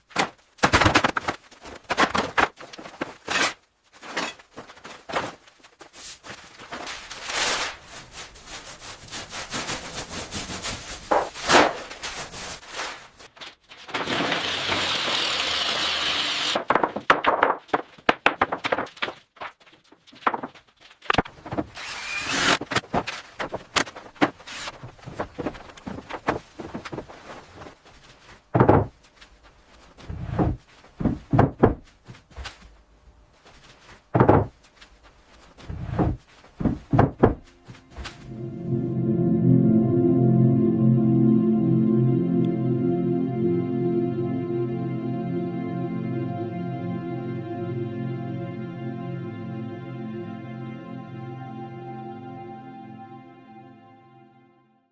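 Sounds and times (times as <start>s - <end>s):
sawing or power tool noise: 14.0s - 16.6s, 21.7s - 22.6s.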